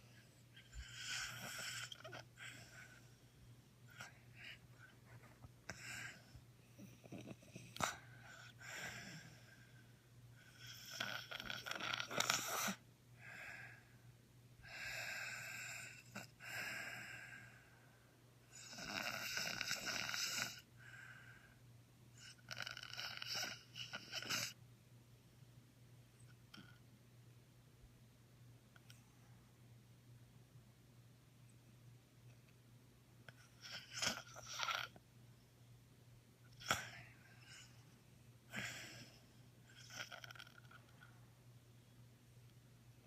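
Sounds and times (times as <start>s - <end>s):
person snoring: 10.5s - 13.8s, 18.5s - 20.6s.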